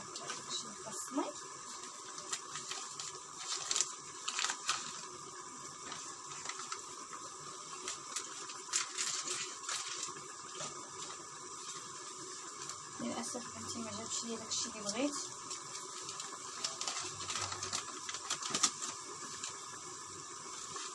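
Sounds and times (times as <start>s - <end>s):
gas stove hiss: 0.0s - 20.9s
spice packet clicks and crinkles: 1.8s - 11.9s, 14.8s - 19.8s.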